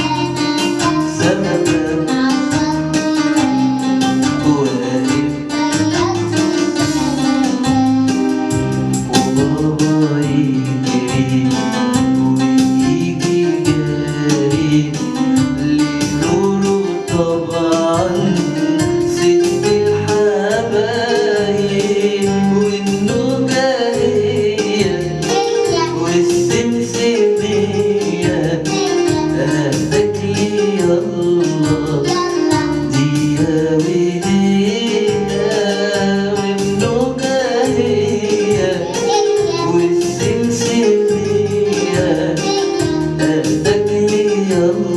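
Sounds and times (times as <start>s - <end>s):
person singing: 0.0s - 44.9s
steady percussion beat: 0.1s - 44.9s.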